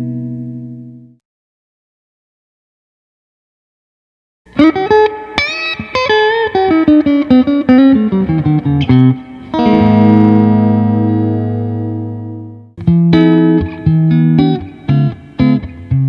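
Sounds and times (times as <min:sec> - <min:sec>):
electric guitar notes and chord: 0:00.0 - 0:01.2, 0:04.5 - 0:16.0.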